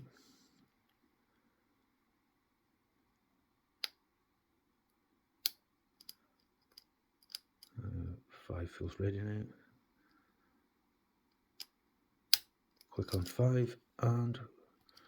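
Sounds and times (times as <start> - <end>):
lock pick clicking in padlock: 5.4 - 7.7.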